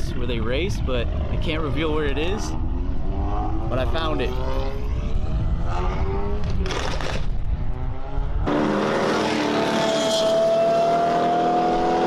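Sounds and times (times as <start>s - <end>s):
engine revving steadily: 0.0s - 12.0s.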